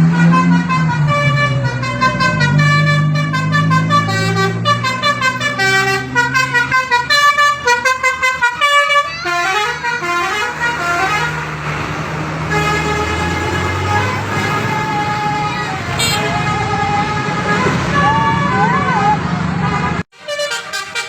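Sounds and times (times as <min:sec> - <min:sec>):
multi-tone bus horn tune: 0:00.0 - 0:21.0.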